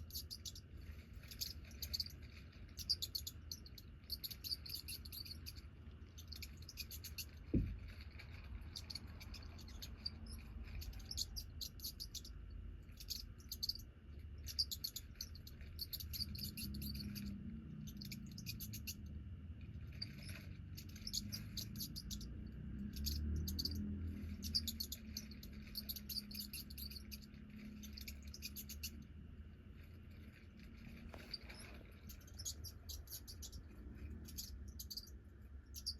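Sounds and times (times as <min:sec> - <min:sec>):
low thump: 0:07.5 - 0:07.9.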